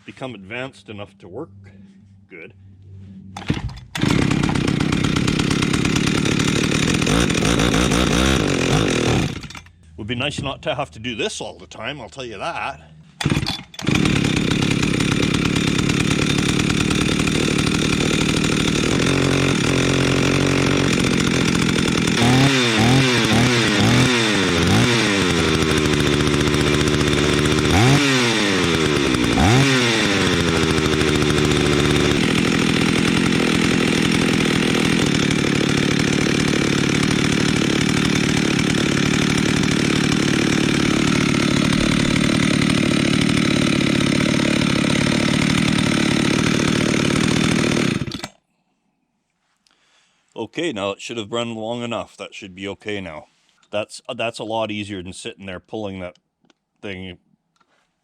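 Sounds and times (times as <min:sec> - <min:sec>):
chainsaw revving and idling: 0:03.4 - 0:09.9, 0:12.4 - 0:48.4.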